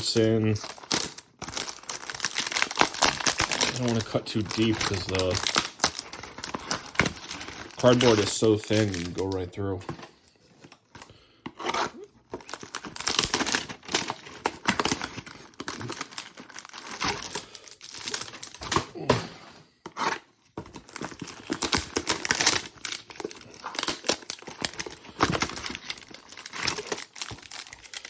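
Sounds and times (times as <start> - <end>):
scraping and crinkling: 0.0 - 18.8
cardboard boxes tearing open: 0.2 - 10.0, 11.5 - 19.2, 19.9 - 28.0.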